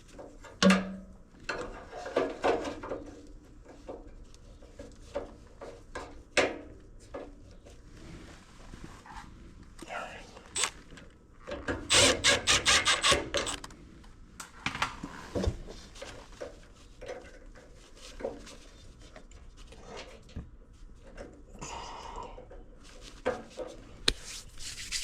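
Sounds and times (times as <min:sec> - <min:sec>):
rubbing or scraping: 0:24.2 - 0:25.0.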